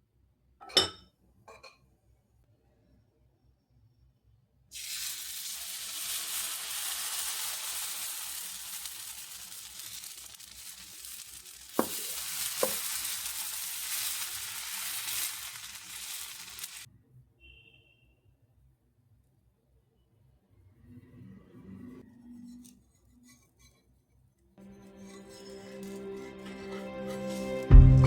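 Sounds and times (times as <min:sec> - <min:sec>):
steady hiss: 0:04.8 - 0:16.9.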